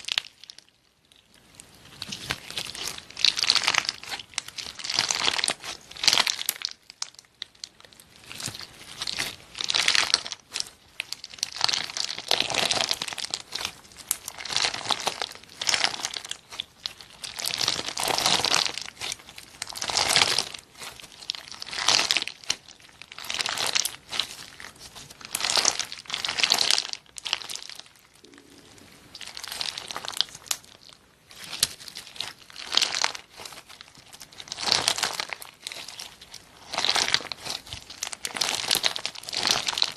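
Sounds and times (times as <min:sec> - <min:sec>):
slime squishing by hand: 0:00.0 - 0:39.9.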